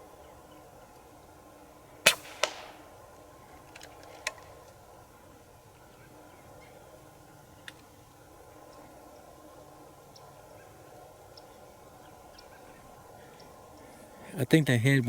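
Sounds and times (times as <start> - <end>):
faint clicks: 0.5 - 1.3, 2.0 - 14.2
air rifle crack: 2.0 - 5.0
weaker crack: 2.0 - 5.0.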